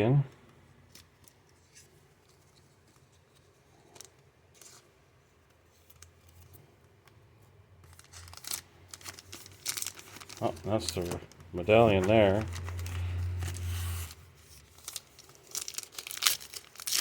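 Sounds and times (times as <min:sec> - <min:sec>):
cards clicking and rustling: 0:07.8 - 0:17.0
pack wrapper crinkling: 0:07.8 - 0:17.0.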